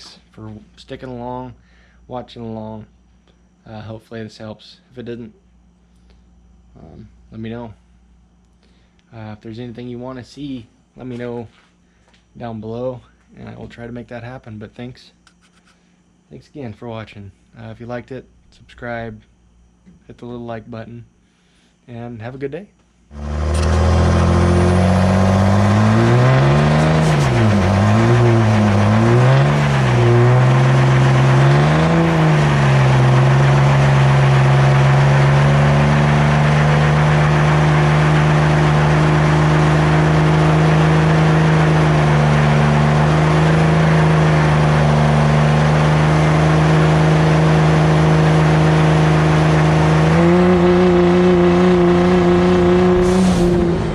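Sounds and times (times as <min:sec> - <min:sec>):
vehicle engine revving: 0:23.1 - 0:53.9.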